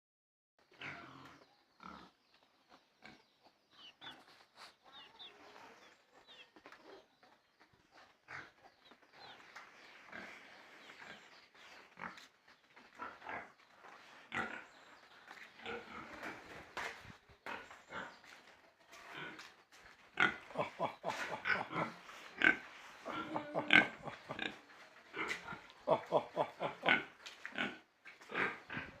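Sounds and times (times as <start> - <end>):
pigs grunting: 0.6 - 29.0
pigs squealing: 20.2 - 29.0.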